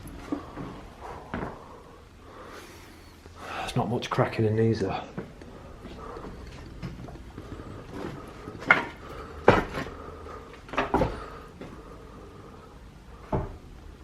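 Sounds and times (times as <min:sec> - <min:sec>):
hard objects clattering: 0:05.2 - 0:11.8.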